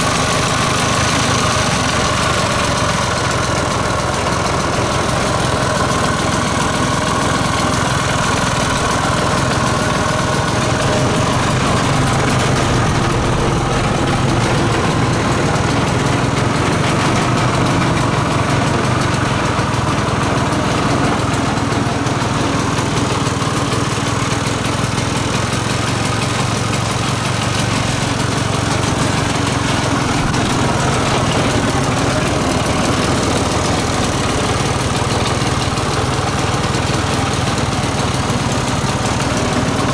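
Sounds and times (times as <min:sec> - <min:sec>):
small two-stroke engine idling: 0:00.0 - 0:39.9.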